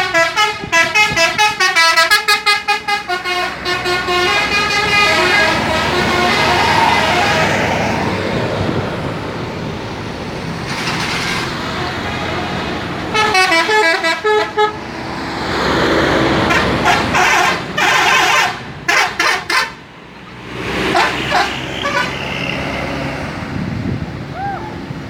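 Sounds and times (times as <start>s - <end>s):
musical bus air horns: 0.0s - 7.8s, 10.7s - 14.8s, 16.4s - 19.8s, 20.8s - 22.7s
bus engines and tyres rushing past: 0.0s - 25.0s.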